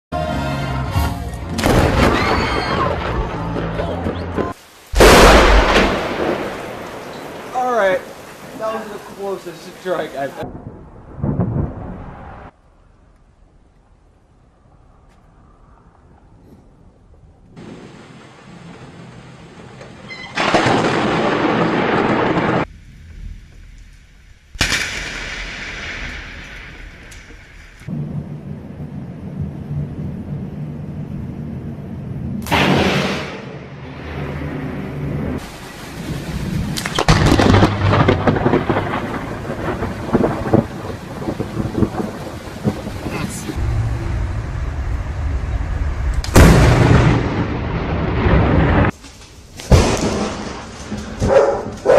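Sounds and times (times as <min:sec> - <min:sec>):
thunder crack and rumble: 0:01.6 - 0:08.6, 0:10.4 - 0:16.3, 0:17.0 - 0:49.0, 0:49.6 - 0:51.9
thunder crackling burst: 0:01.6 - 0:12.9, 0:17.6 - 0:51.9
rain hiss: 0:04.6 - 0:10.4, 0:17.6 - 0:31.8, 0:34.9 - 0:51.2.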